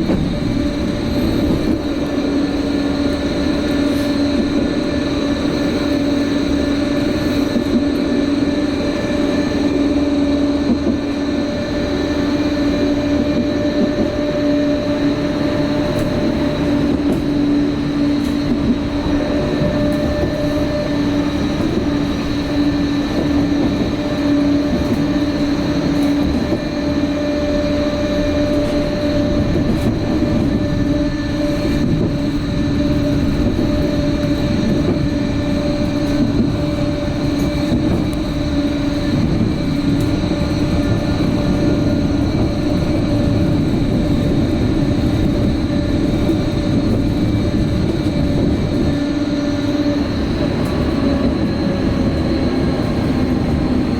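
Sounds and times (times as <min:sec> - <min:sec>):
wheels rumbling on rail: 0:00.0 - 0:53.9.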